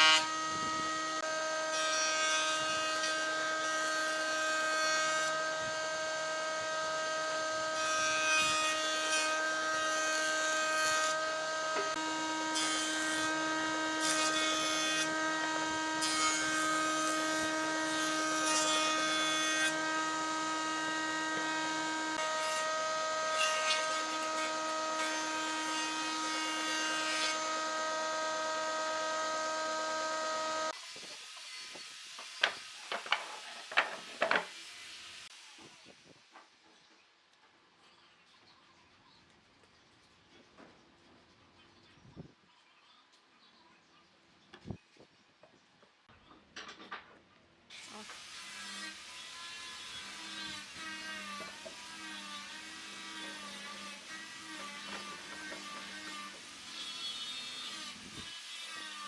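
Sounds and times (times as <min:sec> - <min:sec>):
power tool whining: 0:00.0 - 0:01.8, 0:10.3 - 0:30.8.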